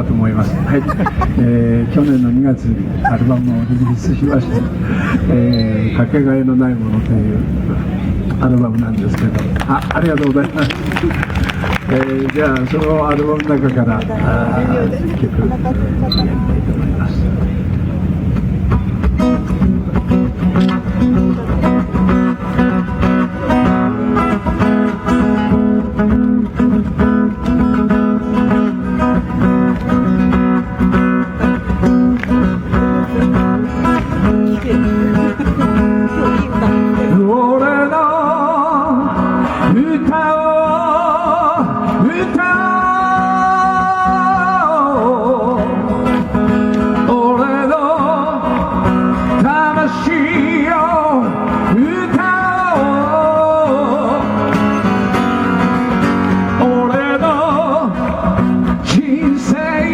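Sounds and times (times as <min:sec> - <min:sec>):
acoustic guitar strumming: 0:11.5 - 0:59.9
man singing: 0:34.6 - 0:46.2, 0:46.9 - 0:54.6, 0:56.3 - 0:59.9.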